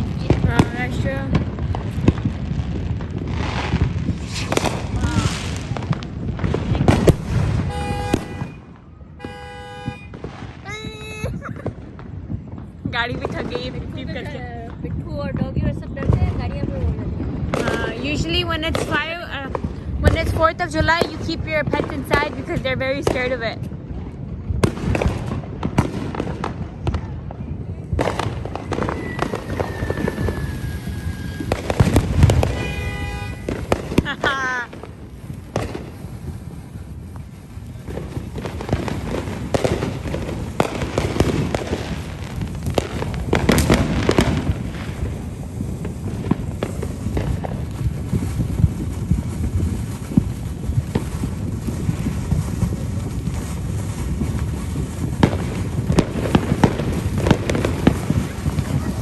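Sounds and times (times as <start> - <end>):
fireworks crackling and popping: 0.0 - 59.0
heavy firework bangs: 0.0 - 59.0
long falling whistle: 28.9 - 31.5.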